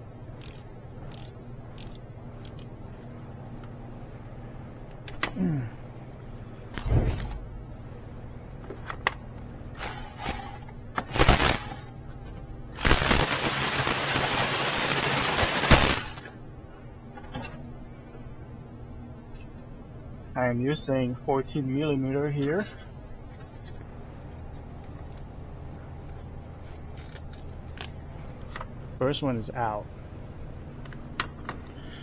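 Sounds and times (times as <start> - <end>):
ratchet wrench clanking: 0.4 - 2.7, 6.7 - 7.4, 9.8 - 11.9, 12.8 - 16.4
ratchet wrench rattling: 0.4 - 2.7, 6.7 - 7.4, 9.8 - 12.0, 12.8 - 16.4.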